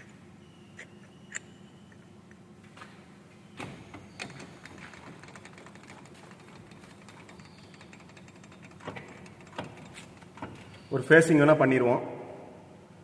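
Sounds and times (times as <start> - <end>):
louder mechanical knocks: 3.6 - 10.8
lathe humming and ticking: 4.0 - 10.9.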